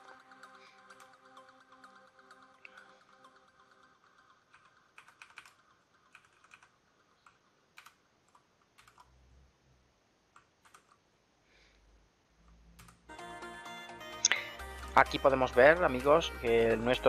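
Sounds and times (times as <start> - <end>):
mechanical keyboard key presses: 4.5 - 9.1.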